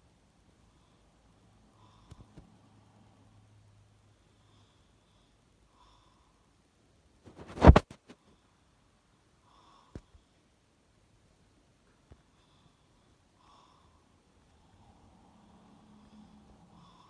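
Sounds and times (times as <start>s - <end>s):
person snoring snort: 7.3s - 7.9s.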